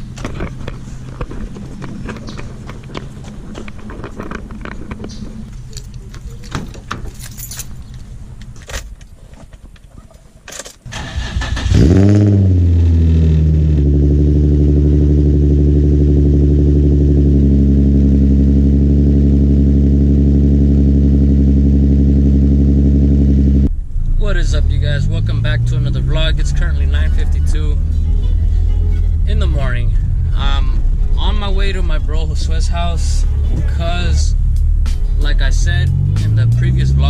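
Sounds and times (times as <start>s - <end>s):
keys jangling: 5.6s - 9.1s
car engine starting and idling: 10.4s - 37.0s.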